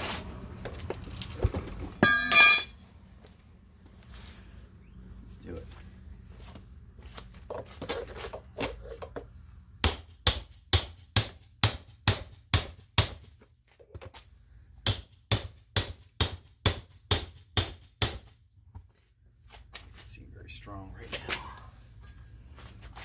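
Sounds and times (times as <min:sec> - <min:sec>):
hammer striking metal safe door: 0:02.0 - 0:02.7.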